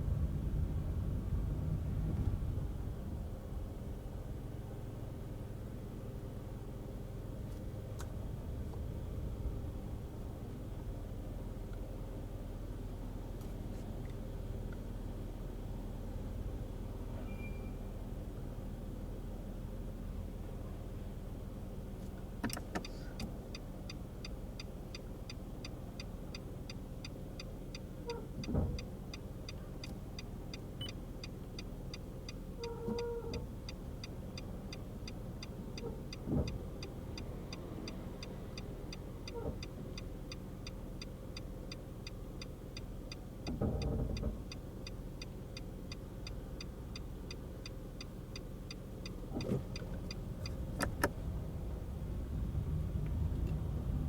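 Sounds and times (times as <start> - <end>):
short tone: 17.2 - 17.8.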